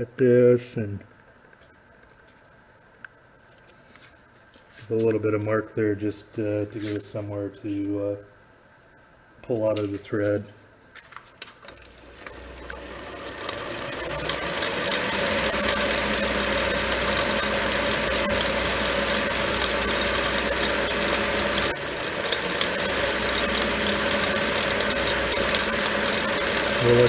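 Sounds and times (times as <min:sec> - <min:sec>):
lathe drive whine: 0:11.6 - 0:27.0
metal lathe running: 0:11.8 - 0:27.0.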